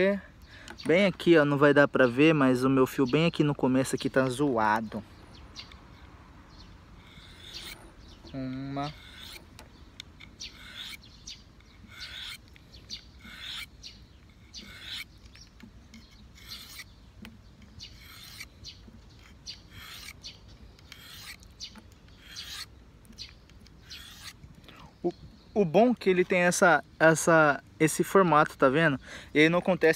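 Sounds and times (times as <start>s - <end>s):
knife rasping on sharpening stone: 7.0s - 7.9s, 8.5s - 9.5s, 10.4s - 11.1s, 11.7s - 12.4s, 13.2s - 15.1s, 15.9s - 16.9s, 17.8s - 18.5s, 19.2s - 20.2s, 20.8s - 21.4s, 22.2s - 22.7s, 23.8s - 24.4s.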